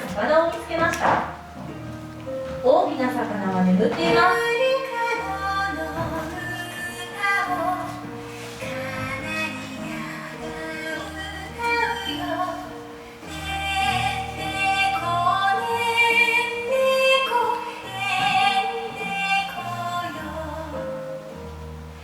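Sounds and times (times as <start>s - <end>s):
woman singing slow melody: 3.9s - 21.4s.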